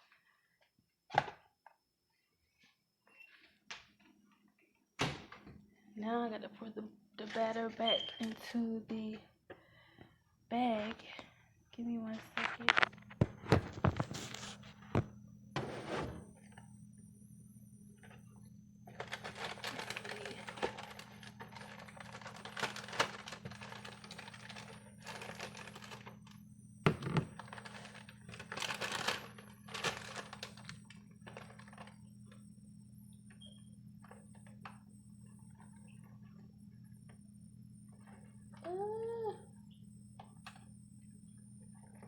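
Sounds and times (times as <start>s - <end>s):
low hum: 10.8s - 42.0s.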